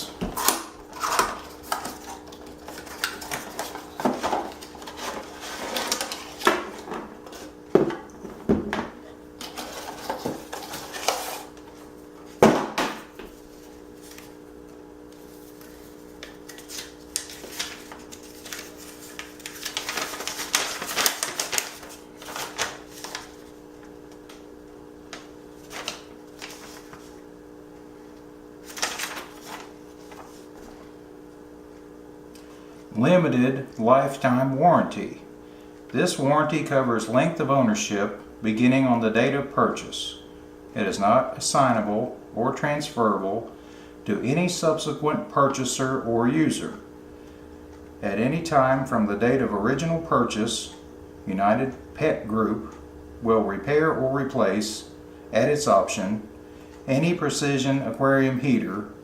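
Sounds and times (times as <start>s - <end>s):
steady low hum: 0.0s - 59.0s
packaging rustling: 0.4s - 7.6s, 15.2s - 24.0s, 25.1s - 27.2s, 28.6s - 30.8s.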